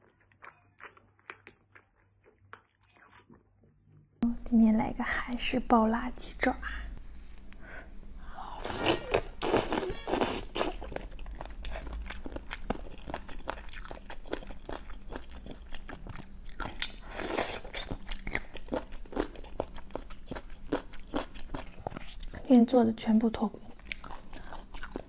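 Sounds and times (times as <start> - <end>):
biting and chewing food: 0.0 - 3.6, 8.8 - 22.4.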